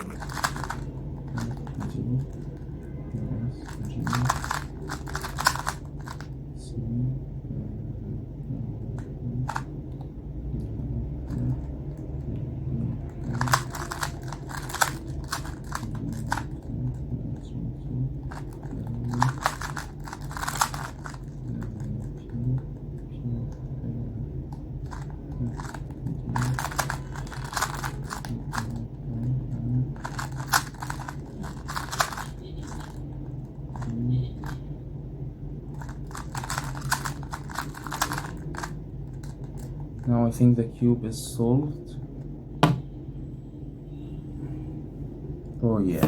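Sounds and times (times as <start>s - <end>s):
steady low hum: 0.0s - 46.0s
puzzle cube layers clicking: 18.7s - 21.6s.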